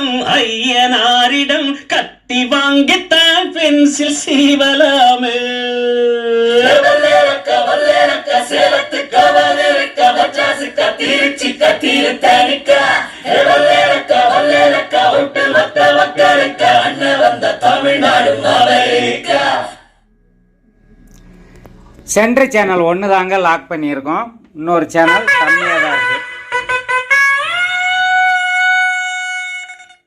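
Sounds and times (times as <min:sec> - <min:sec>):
song over loudspeaker: 0:24.9 - 0:29.4.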